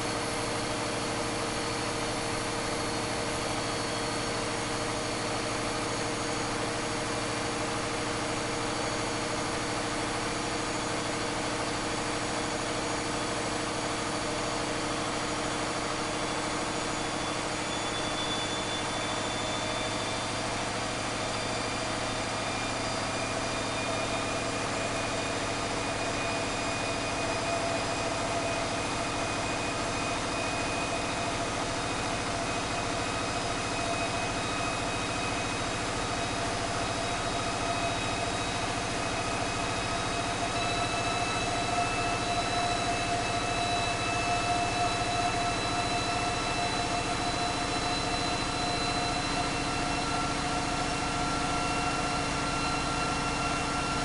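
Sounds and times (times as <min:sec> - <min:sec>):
diesel engine droning with whine: 0:00.0 - 0:54.0.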